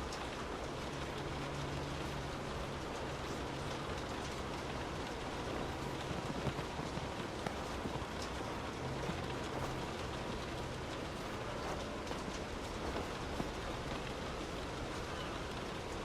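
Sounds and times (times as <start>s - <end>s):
rain hissing: 0.0s - 16.0s.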